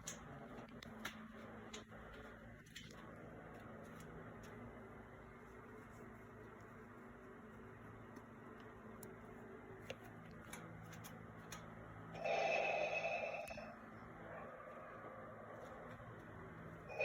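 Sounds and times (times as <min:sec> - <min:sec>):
low steady hum: 0:00.0 - 0:17.0
mechanical respirator breathing: 0:12.2 - 0:15.4.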